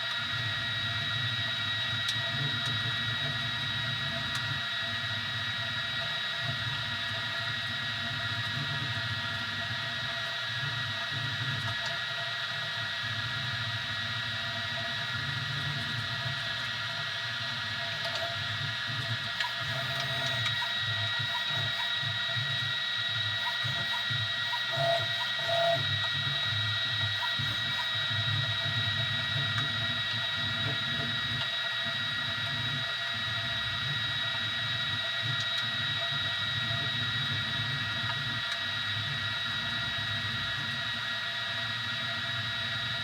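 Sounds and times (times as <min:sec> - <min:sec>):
printer stepper motors whirring: 0:17.8 - 0:32.9.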